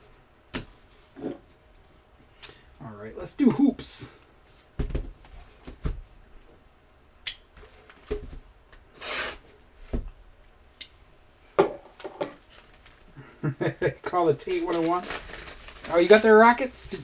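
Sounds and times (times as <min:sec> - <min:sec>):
wrapper tearing and rustling: 0:14.4 - 0:17.0.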